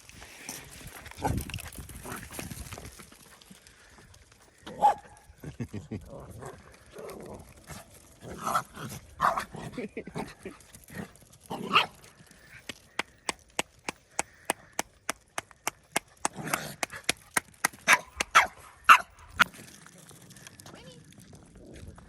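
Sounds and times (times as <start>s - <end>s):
dogs barking and yipping: 4.6s - 5.3s, 7.9s - 9.7s, 10.3s - 13.3s, 15.9s - 19.5s.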